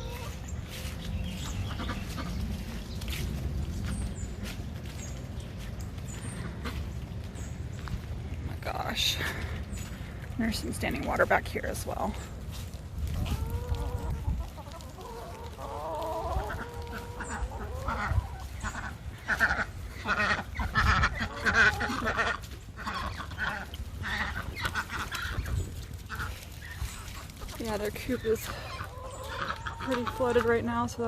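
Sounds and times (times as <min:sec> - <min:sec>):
poultry drawn-out calls: 0:00.0 - 0:02.8, 0:13.2 - 0:30.5
poultry clucking and honking: 0:00.0 - 0:07.9, 0:08.6 - 0:31.0.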